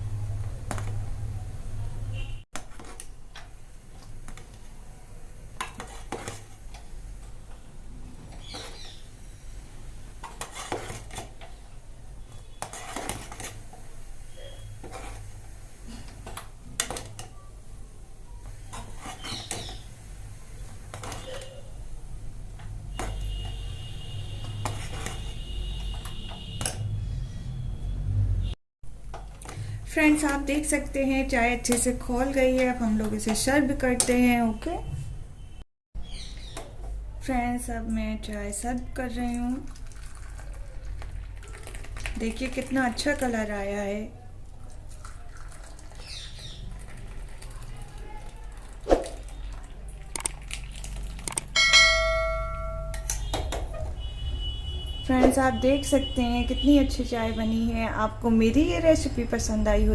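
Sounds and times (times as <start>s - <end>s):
spoon scraping a pan: 5.6s - 6.8s, 8.3s - 9.1s, 10.2s - 11.6s, 12.2s - 17.3s, 18.5s - 19.9s, 20.6s - 21.7s, 24.4s - 26.9s
thin high tone: 51.6s - 53.2s.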